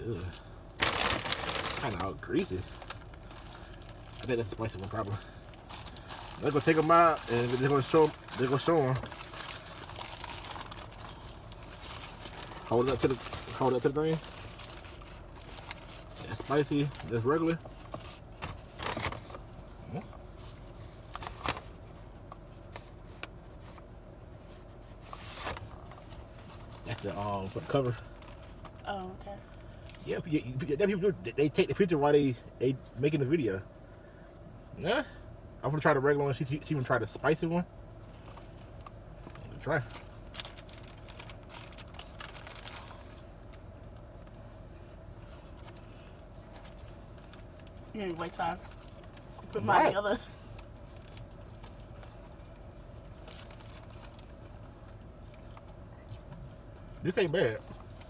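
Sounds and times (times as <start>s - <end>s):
sandwich wrappers rustling: 0.0s - 28.9s, 38.2s - 44.4s, 45.2s - 55.7s.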